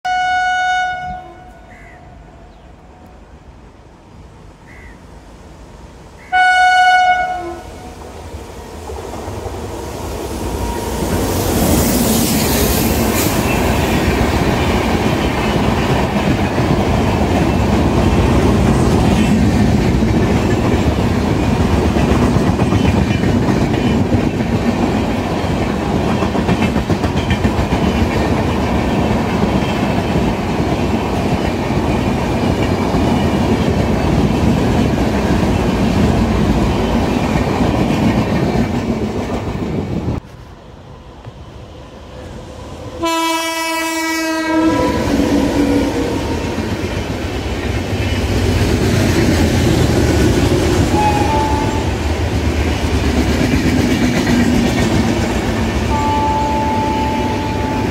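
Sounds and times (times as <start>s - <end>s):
high-pitched train screech: 9.8s - 14.1s, 50.6s - 52.1s, 55.9s - 57.9s
train wheels clattering over rail joints: 11.0s - 39.9s.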